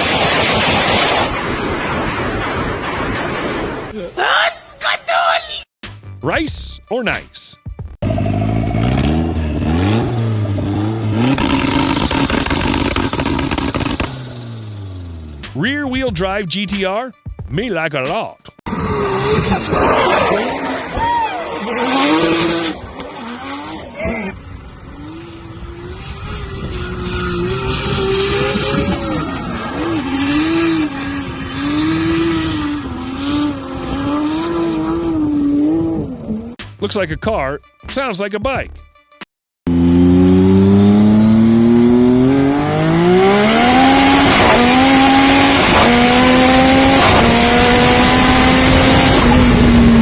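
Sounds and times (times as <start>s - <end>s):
car engine revving: 8.0s - 15.6s, 18.7s - 36.6s, 39.7s - 50.0s
exhaust popping and crackling: 8.0s - 16.4s.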